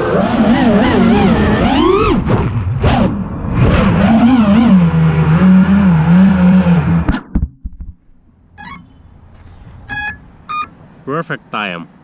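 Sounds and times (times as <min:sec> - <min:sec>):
drone motors whining: 0:08.5 - 0:10.9.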